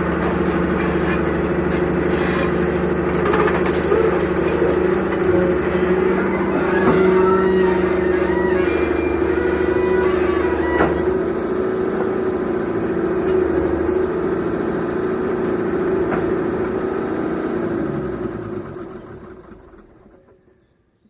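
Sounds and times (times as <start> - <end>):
diesel engine running: 0.0 - 20.9.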